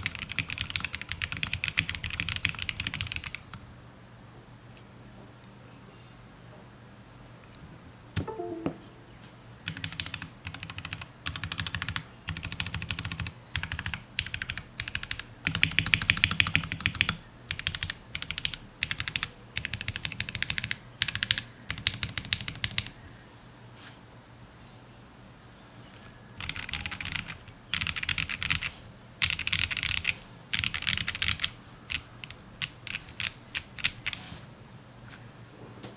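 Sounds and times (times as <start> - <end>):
mechanical keyboard typing: 0.0 - 3.4, 9.7 - 22.9, 26.4 - 34.2.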